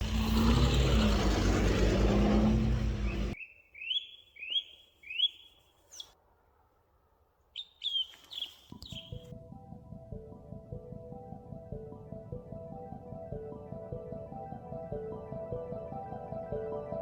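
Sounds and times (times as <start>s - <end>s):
loud rumbling with low hum: 0.0s - 3.4s
small bird chirping: 3.0s - 6.2s, 7.6s - 9.3s.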